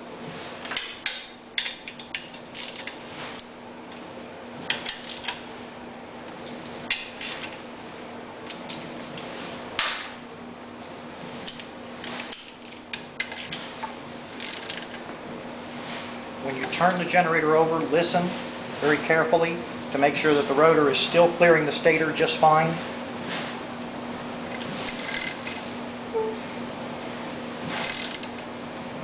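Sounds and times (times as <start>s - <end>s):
faint steady hum: 23.6s - 27.0s.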